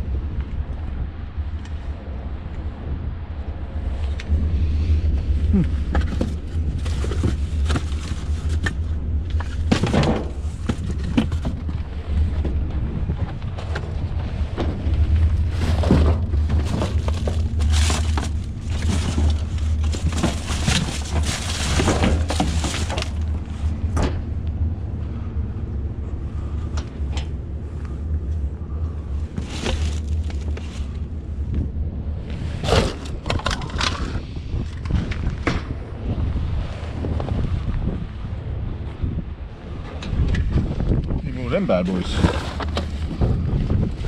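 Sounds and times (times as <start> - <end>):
steady low rumble: 0.0 - 44.0
junk being rummaged through: 5.4 - 24.3, 26.4 - 31.6, 32.2 - 35.7, 41.6 - 44.0.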